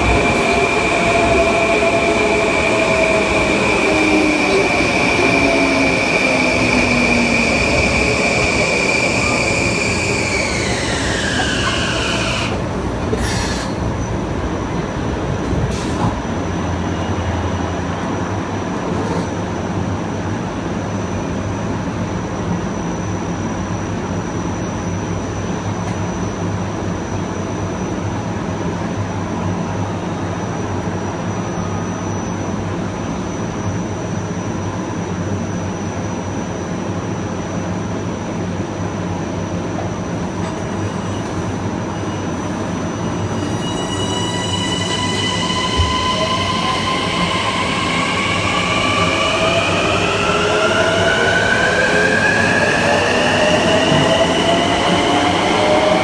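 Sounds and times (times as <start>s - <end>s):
train wheels rumbling on rails: 38.5s - 56.0s.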